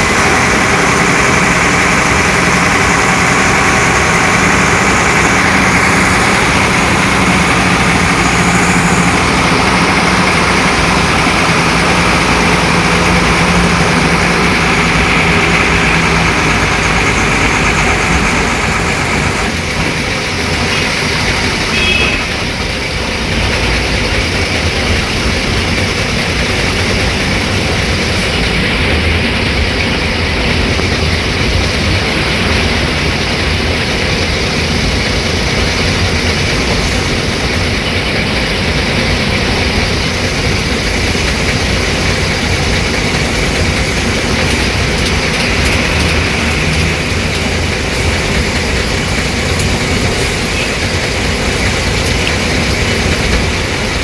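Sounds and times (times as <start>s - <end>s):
bus diesel engine running: 0.0s - 54.0s.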